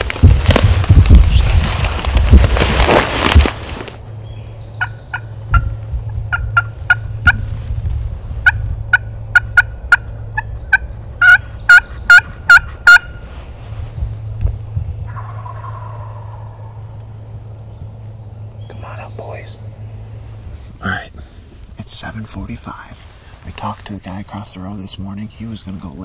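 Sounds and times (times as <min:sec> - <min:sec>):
turkey yelps: 0:08.4 - 0:13.2, 0:15.1 - 0:16.7
faint lower turkey call: 0:15.1 - 0:16.9.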